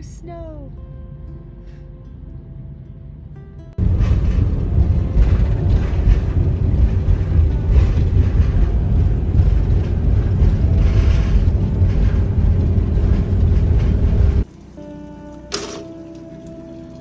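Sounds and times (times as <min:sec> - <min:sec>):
wind buffeting microphone: 0:03.8 - 0:14.5.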